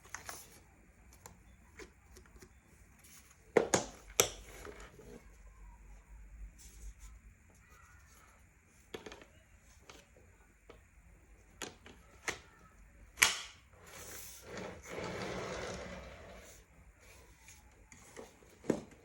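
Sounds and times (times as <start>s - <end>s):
rustling and scraping: 13.8s - 19.0s.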